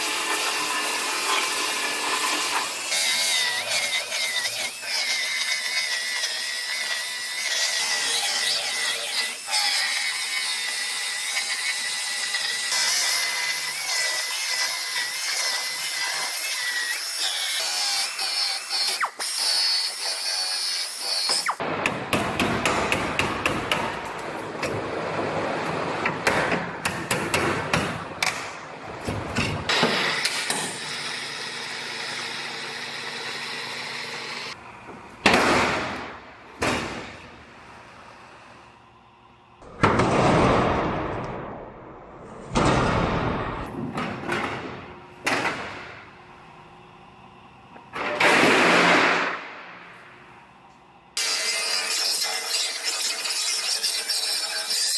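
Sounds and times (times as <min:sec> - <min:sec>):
power tool cutting metal: 0:00.0 - 0:21.6, 0:29.7 - 0:34.6, 0:51.2 - 0:54.9.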